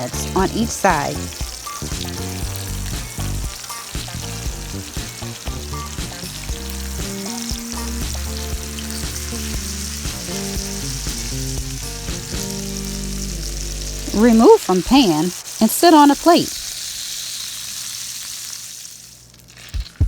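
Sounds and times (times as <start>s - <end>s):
chicken frying in oil: 0.0s - 20.0s.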